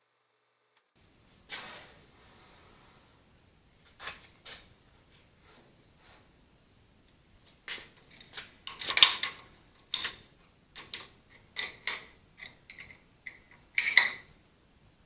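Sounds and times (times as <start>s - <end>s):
metal tools clinking: 7.1s - 14.4s.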